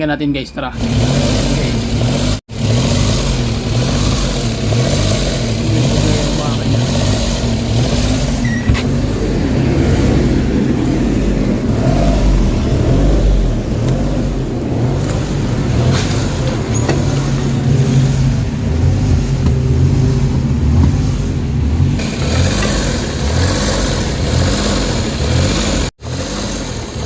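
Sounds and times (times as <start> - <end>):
car engine hunting idle: 0.8 - 27.0.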